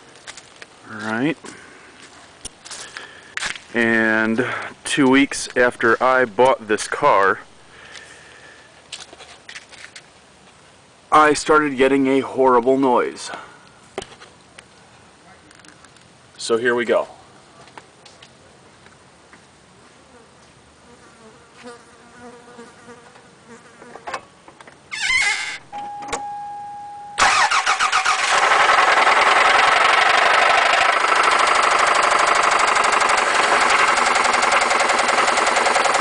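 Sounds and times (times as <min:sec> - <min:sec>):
short steady beep: 0:25.7 - 0:27.2
car engine cranking and starting: 0:27.2 - 0:36.0
engine running with rapid knock: 0:28.0 - 0:36.0.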